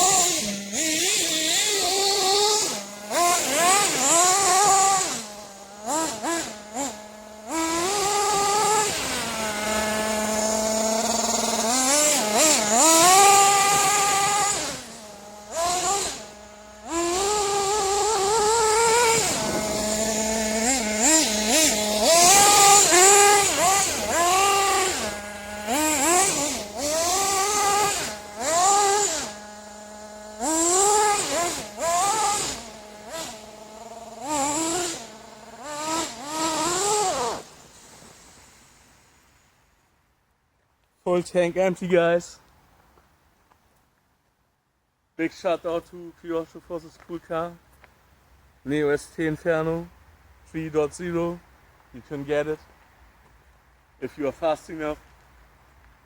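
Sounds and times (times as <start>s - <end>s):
model nitro engine revving: 0.0s - 39.6s.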